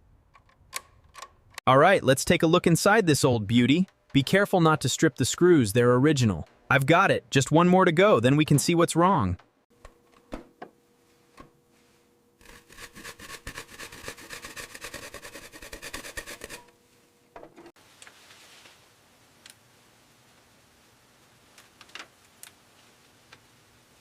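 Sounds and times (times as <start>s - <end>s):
hand tool scratching rasp: 12.4s - 16.7s.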